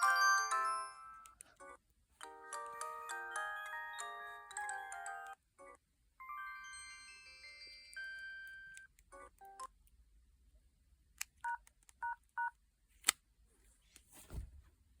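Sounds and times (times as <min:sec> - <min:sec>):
phone ringtone: 0:02.2 - 0:08.9.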